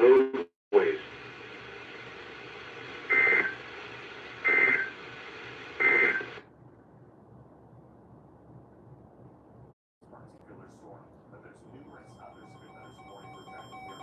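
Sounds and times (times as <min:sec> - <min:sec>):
radio reception hiss: 0:00.0 - 0:06.4, 0:10.0 - 0:14.0
warbling two-tone data signal: 0:11.8 - 0:14.0.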